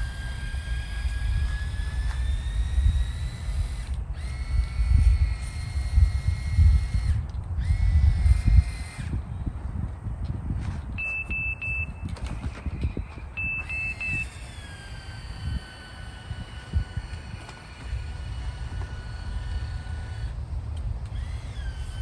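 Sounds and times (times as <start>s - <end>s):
small motor whining: 0.0s - 22.0s
short high beeps: 11.0s - 12.2s, 13.0s - 14.5s.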